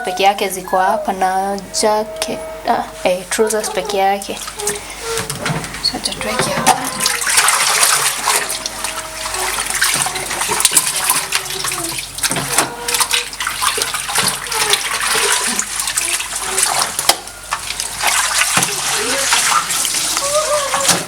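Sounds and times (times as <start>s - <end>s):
water splashing in washing machine: 3.3s - 21.0s.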